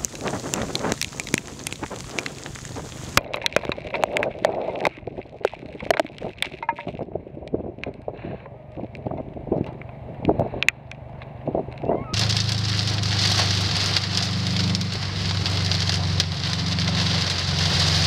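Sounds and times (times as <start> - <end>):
rain ticking on car roof: 0.0 - 7.0, 12.2 - 18.0
low wind noise: 0.0 - 18.0.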